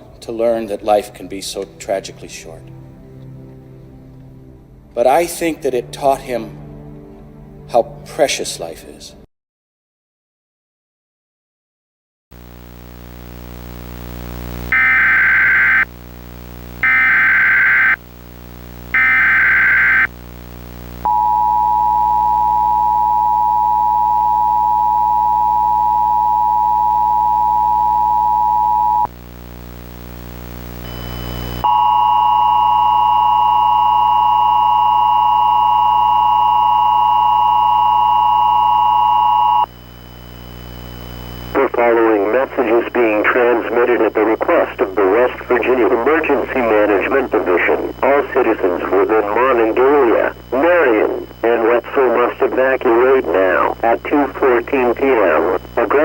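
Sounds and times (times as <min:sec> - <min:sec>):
low buzz: 0:12.4 - 0:41.6.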